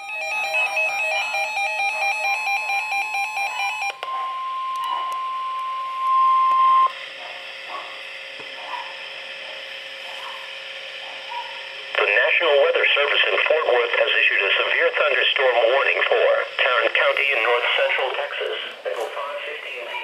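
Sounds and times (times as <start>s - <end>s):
electronic beeping tune: 0.0s - 6.9s
steady alarm tone: 0.0s - 20.0s
radio hiss: 6.5s - 20.0s.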